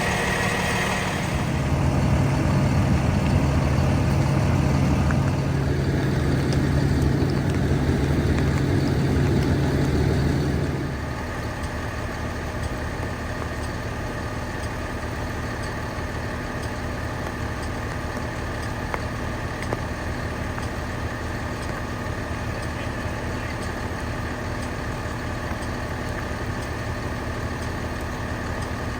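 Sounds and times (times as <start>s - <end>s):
loud low hum: 0.0s - 11.5s
large vehicle engine idling: 0.0s - 28.9s.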